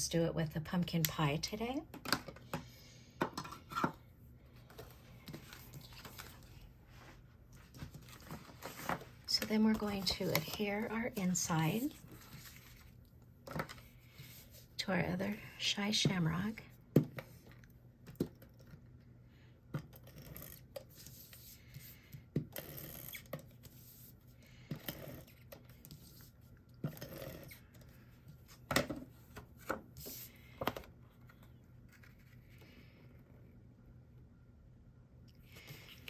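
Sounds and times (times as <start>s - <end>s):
paper rubbing rustles: 4.9s - 13.0s.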